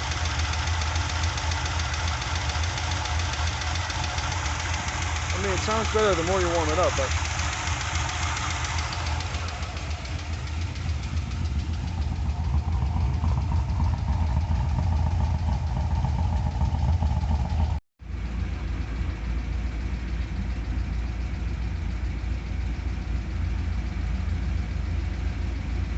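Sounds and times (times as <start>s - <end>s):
valvetrain ticking: 0.0s - 17.8s
car engine idling: 0.0s - 25.9s.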